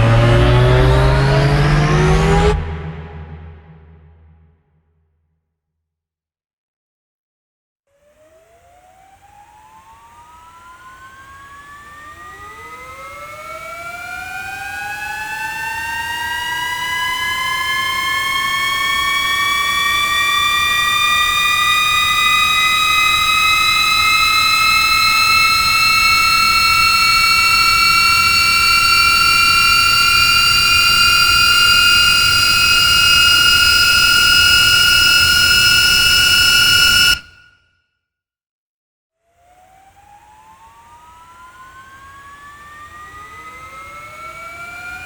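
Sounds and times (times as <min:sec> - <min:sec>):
rising siren-like tone: 0:00.0 - 0:04.4, 0:10.1 - 0:37.5, 0:39.8 - 0:45.0.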